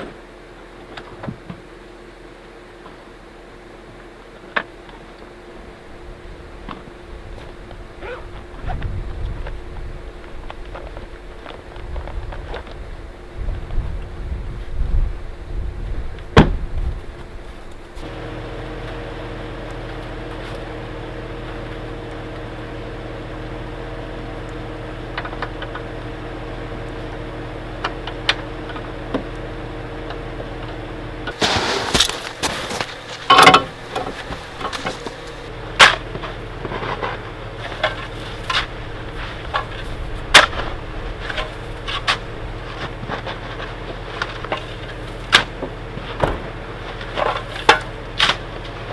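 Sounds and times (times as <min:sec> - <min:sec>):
steady motor hum: 0:00.0 - 0:48.9
gusting wind: 0:05.4 - 0:18.2, 0:31.1 - 0:35.7, 0:37.9 - 0:43.1
objects being handled: 0:31.3 - 0:35.5.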